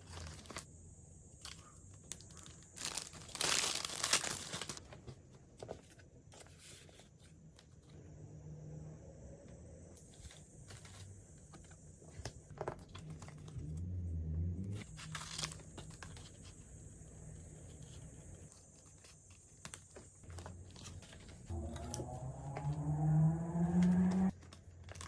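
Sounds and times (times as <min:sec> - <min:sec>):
packaging crinkling and tearing: 0:01.4 - 0:05.0, 0:14.8 - 0:16.5, 0:24.3 - 0:25.0
low hum: 0:07.8 - 0:18.6, 0:20.4 - 0:24.3.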